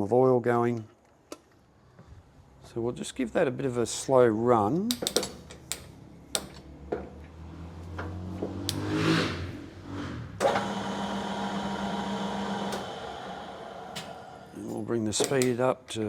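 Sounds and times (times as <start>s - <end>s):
metal lathe running: 10.4s - 14.8s
control clicks: 14.0s - 15.6s.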